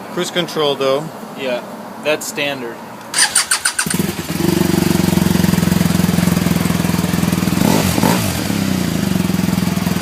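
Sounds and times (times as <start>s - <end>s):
motorcycle engine starting and idling: 3.1s - 10.0s.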